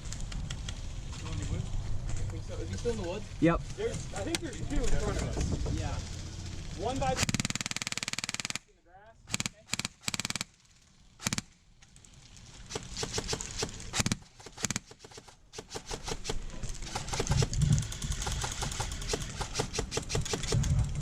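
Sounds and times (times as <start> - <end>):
low rumble: 0.0 - 7.5
airsoft guns firing: 7.0 - 8.7, 9.3 - 10.6, 11.2 - 11.5, 12.6 - 20.9.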